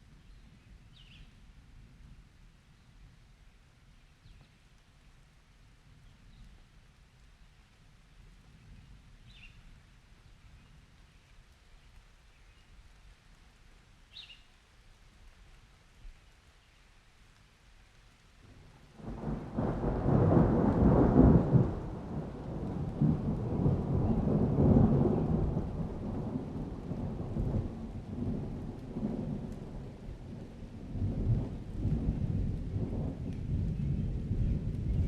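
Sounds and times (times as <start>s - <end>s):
thunder rumbling: 18.5s - 35.0s.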